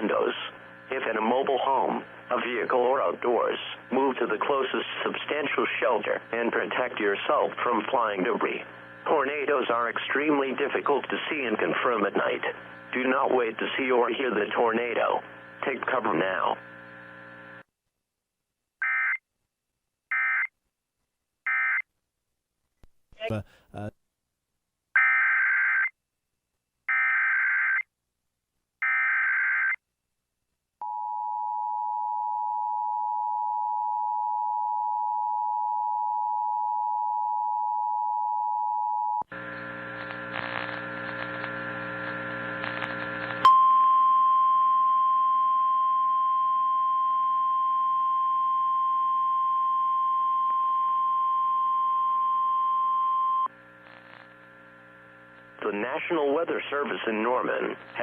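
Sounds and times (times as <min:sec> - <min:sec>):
buzzing hum: 0:39.3 - 0:43.7, 0:53.4 - 0:55.6.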